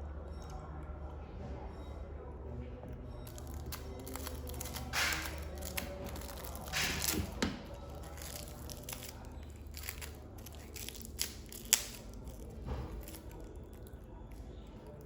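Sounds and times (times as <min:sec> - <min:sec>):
tearing or crinkling bursts: 0:03.3 - 0:14.0.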